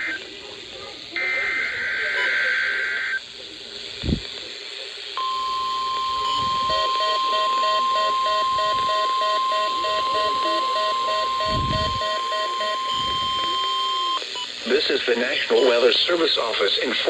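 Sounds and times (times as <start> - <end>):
steady alarm tone: 1.2 - 3.3, 5.2 - 14.2
lower pulsing beep: 5.2 - 14.2.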